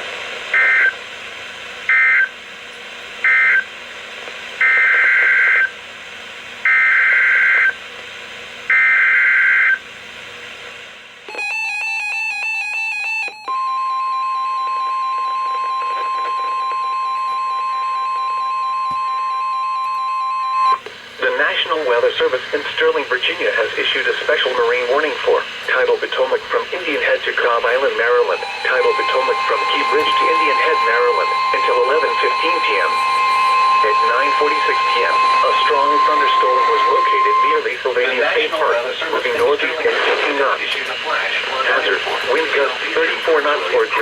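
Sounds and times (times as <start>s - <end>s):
steady warning alarm tone: 1.9s - 2.4s, 3.2s - 3.7s, 4.6s - 5.7s, 6.6s - 7.8s, 8.7s - 9.8s, 11.3s - 44.0s
screeching data bursts: 26.5s - 40.2s.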